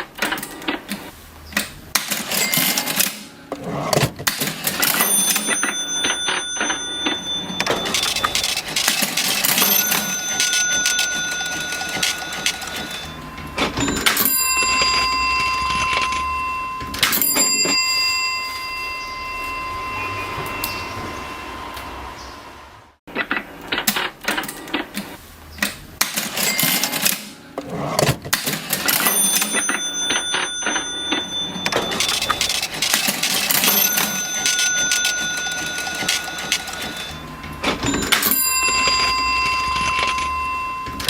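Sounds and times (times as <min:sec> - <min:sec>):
cash register keys clattering: 0:01.9 - 0:18.8, 0:26.0 - 0:41.0
cash register bell ringing: 0:01.9 - 0:22.4, 0:26.0 - 0:41.0.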